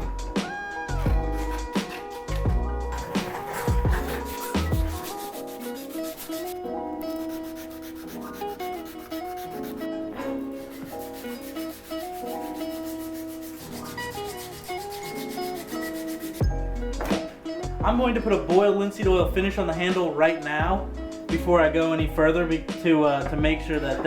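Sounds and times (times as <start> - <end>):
background music: 0.0 - 24.0
sandpaper rubbing on wood: 1.0 - 16.4.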